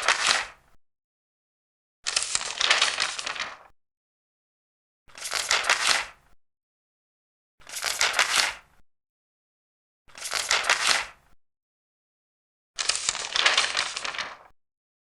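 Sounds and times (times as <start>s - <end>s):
paper page turning: 0.0s - 0.6s, 2.1s - 3.7s, 5.1s - 6.2s, 7.6s - 8.6s, 10.1s - 11.2s, 12.8s - 14.5s.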